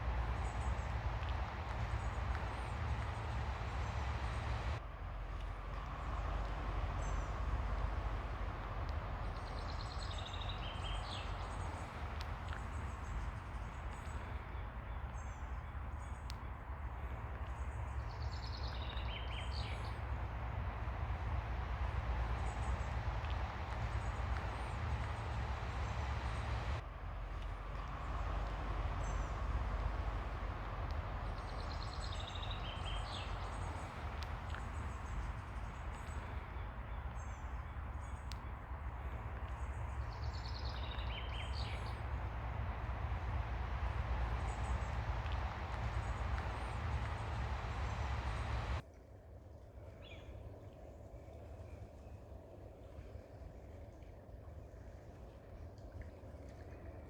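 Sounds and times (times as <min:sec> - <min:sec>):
ocean surf on beach: 0:39.0 - 0:48.8.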